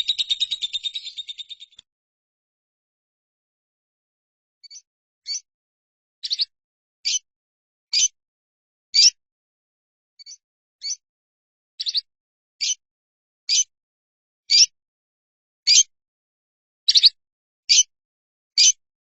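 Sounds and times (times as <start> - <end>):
songbird chirps: 0.0 - 1.8, 4.6 - 5.5, 6.2 - 7.3, 10.2 - 11.0, 11.8 - 12.8, 16.9 - 17.9.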